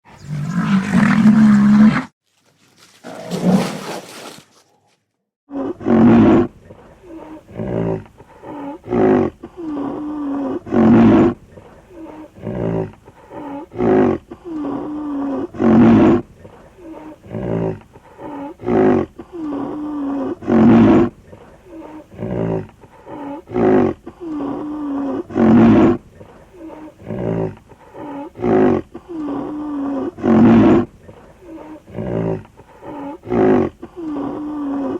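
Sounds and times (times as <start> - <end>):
rhinoceros huffing grunts: 15.5 - 34.9.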